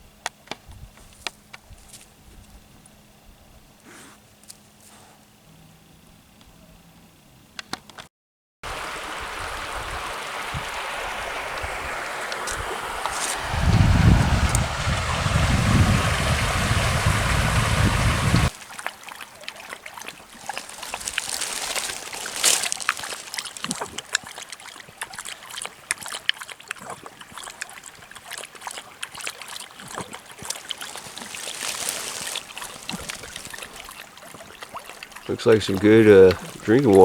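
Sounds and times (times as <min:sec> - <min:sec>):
trickling water: 0:08.6 - 0:37.0
wind buffeting microphone: 0:08.7 - 0:18.5
small splashes and clicks: 0:10.3 - 0:13.5, 0:18.3 - 0:37.0.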